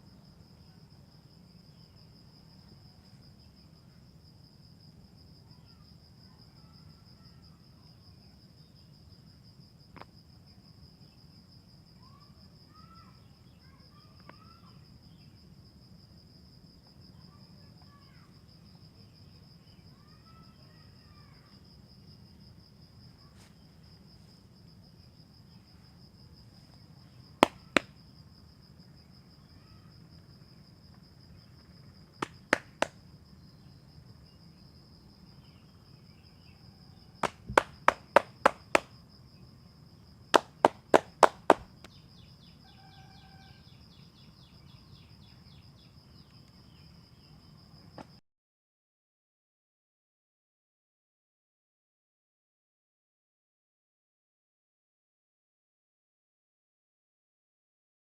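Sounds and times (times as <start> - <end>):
sharp percussive massage strikes: 27.4 - 27.9, 32.2 - 32.9, 37.2 - 38.9, 40.4 - 41.6.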